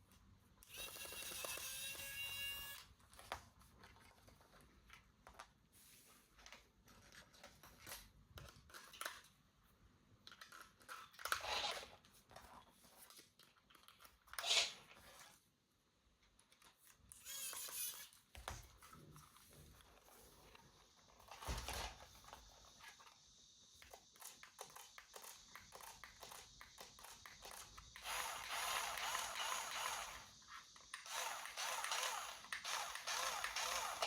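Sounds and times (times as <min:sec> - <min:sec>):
plastic and cardboard rustling: 0:03.0 - 0:15.6.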